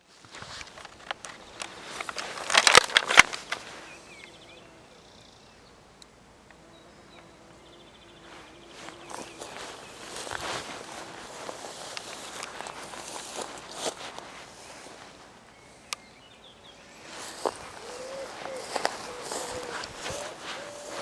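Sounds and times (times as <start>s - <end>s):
rustling: 0.0s - 4.2s, 8.2s - 15.6s, 16.8s - 21.0s
bumblebee buzzing: 6.6s - 15.0s, 16.8s - 21.0s
footsteps: 8.2s - 15.4s, 17.0s - 21.0s.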